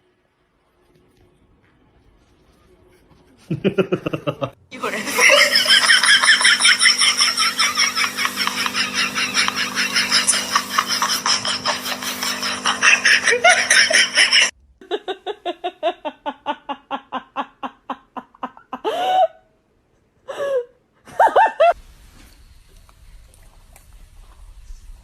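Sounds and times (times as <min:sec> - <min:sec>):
people laughing: 0:03.4 - 0:18.9, 0:21.1 - 0:21.8
person laughing in pitched bursts: 0:03.5 - 0:19.4, 0:21.1 - 0:21.8.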